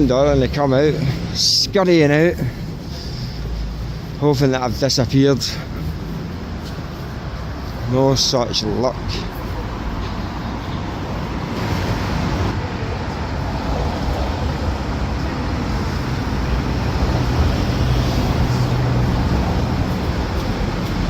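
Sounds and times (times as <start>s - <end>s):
traffic rumble: 0.0s - 21.0s.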